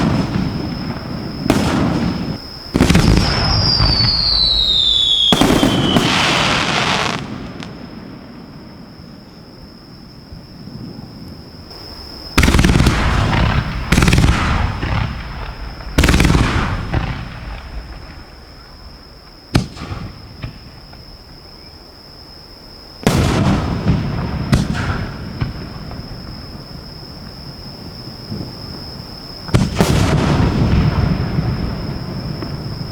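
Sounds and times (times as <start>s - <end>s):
firework sharp crack: 0.0s - 8.2s, 12.4s - 18.7s, 19.5s - 21.0s, 23.0s - 26.1s, 29.5s - 31.4s
firework booms: 0.0s - 9.2s, 11.7s - 21.6s, 23.0s - 32.9s.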